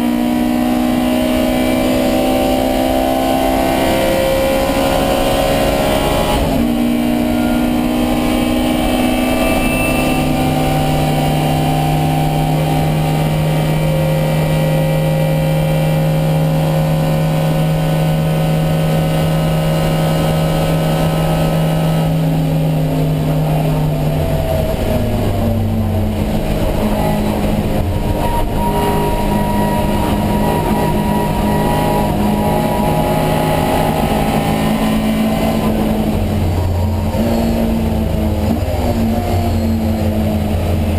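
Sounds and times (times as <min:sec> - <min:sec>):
race car engine running hard: 0:00.0 - 0:40.9.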